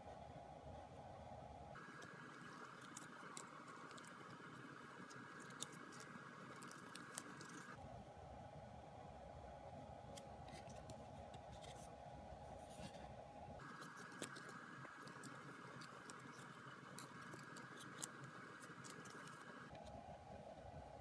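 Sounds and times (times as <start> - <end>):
packaging clicks and scratches: 1.9 - 7.8, 13.6 - 19.9.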